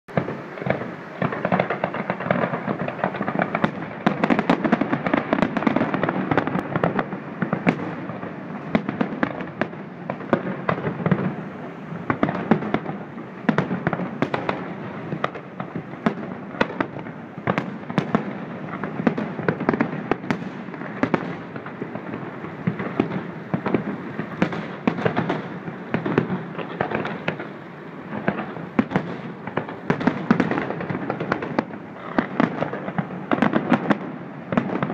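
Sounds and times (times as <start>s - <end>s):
fireworks bangs and crackling: 0.1s - 34.9s.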